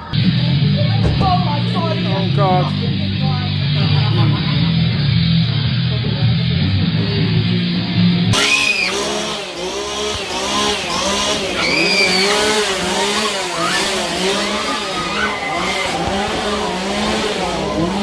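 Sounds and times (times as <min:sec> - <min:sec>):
chainsaws revving: 0:06.9 - 0:18.0.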